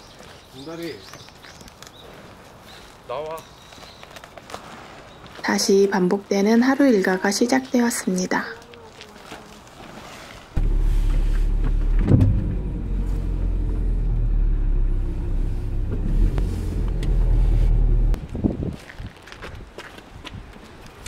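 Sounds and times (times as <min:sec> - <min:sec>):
car engine droning: 0:10.6 - 0:18.2.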